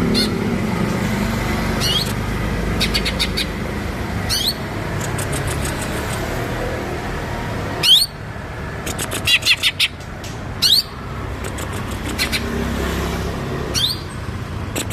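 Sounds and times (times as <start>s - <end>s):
bird short high chirps: 13.7s - 14.2s.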